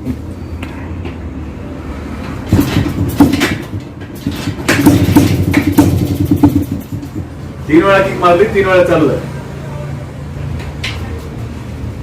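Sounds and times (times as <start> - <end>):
motorcycle engine kick-started: 2.5 - 7.3.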